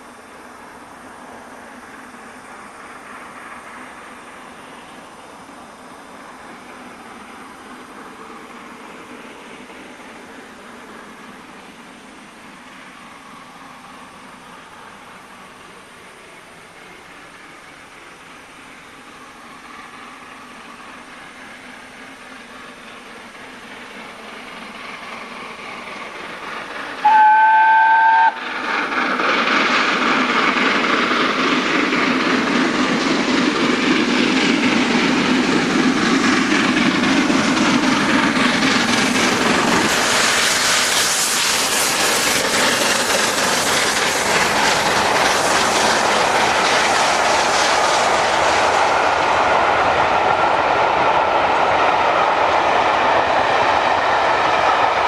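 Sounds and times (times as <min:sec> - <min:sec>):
steam train rushing past: 0:00.0 - 0:55.0
steam locomotive whistle: 0:27.0 - 0:28.6
carriages clattering over rails: 0:28.3 - 0:55.0.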